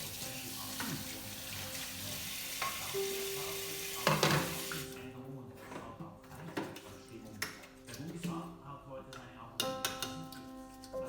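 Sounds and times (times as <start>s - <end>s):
tap water running and splashing: 0.0s - 5.0s
parts knocking against sink: 4.0s - 4.7s.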